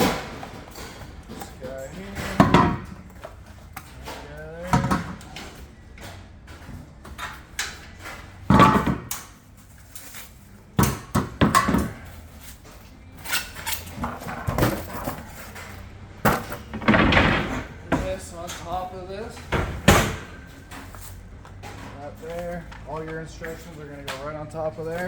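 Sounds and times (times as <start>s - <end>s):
grill parts knocking and clattering: 0.0s - 25.0s
packaging scraping and rustling: 12.2s - 16.0s.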